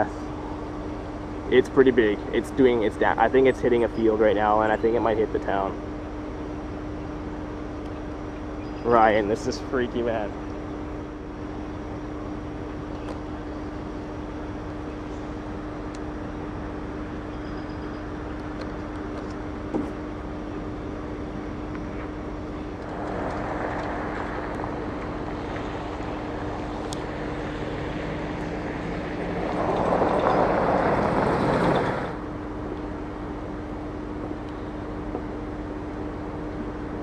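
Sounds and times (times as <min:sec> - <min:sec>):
vehicle engine humming: 0:00.0 - 0:37.0
rushing noise: 0:22.8 - 0:32.3.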